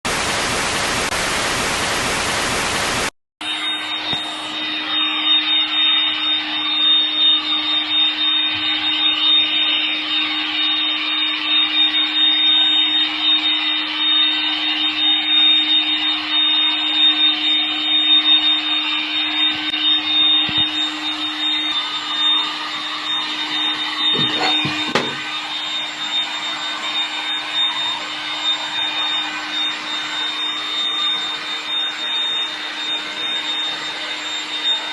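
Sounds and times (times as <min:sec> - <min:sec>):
loud even hiss: 0:00.1 - 0:03.1
machine motor whining and humming: 0:00.2 - 0:34.9.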